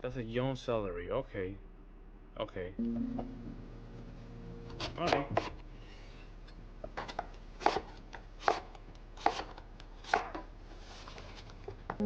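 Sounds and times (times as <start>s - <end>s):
knife chopping on cutting board: 7.1s - 10.4s.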